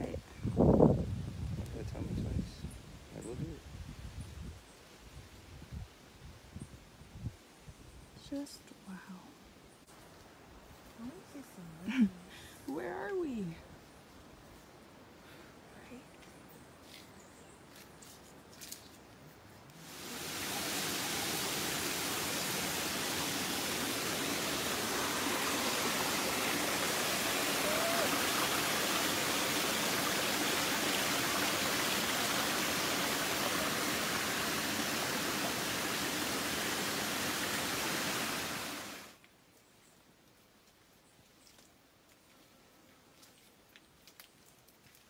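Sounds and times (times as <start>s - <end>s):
faint background hiss: 1.6s - 45.0s
waterfall roaring: 19.8s - 39.1s.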